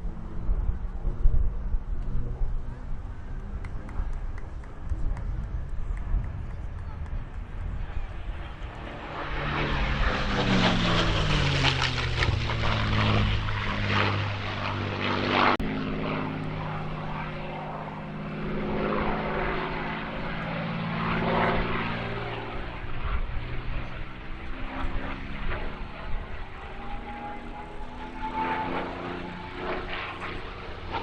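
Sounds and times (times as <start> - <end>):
propeller aircraft passing overhead: 0.0 - 31.0.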